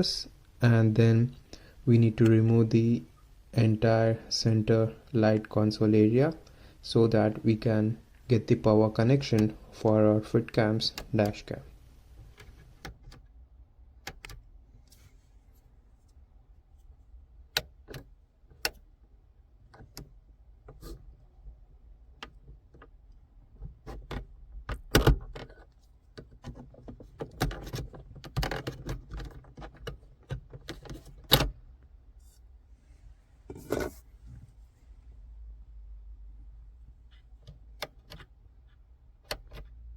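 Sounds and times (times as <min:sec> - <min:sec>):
plastic clicks and scraping: 0:23.6 - 0:31.5.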